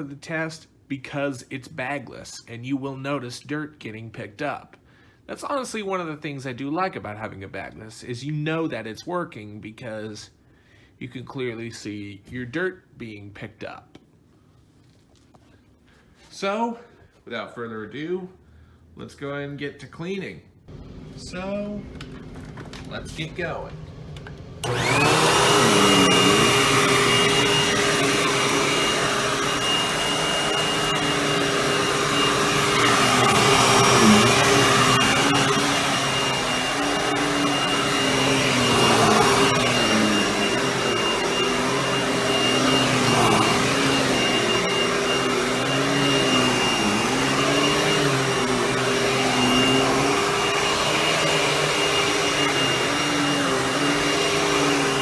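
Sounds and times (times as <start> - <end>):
vacuum cleaner motor whine: 20.7 - 55.0.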